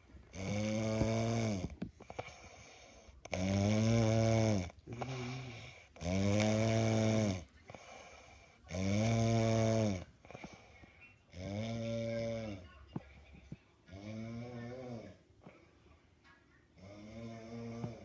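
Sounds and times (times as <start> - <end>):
quiet breaths: 0.0 - 18.0
loud buzzing snores: 0.3 - 8.1, 8.7 - 10.1, 11.3 - 12.6, 13.9 - 15.2, 16.8 - 18.0.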